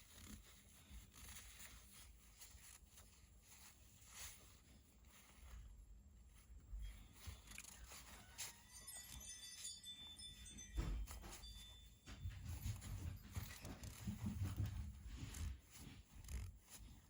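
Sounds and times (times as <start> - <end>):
thin metallic rings: 6.8 - 14.2.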